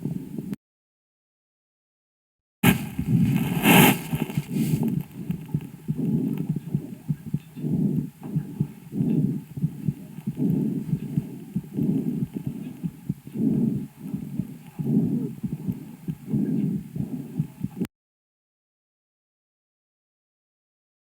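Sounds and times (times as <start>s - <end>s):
contact rustle: 2.6s - 5.5s
calf breathing through stethoscope: 3.3s - 17.8s.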